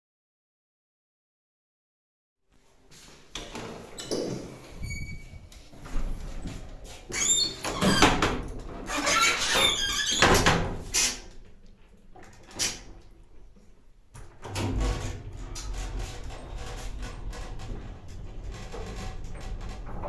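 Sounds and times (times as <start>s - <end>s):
lift doors squeaking and clattering: 3.3s - 11.4s, 12.2s - 13.0s, 14.2s - 20.0s.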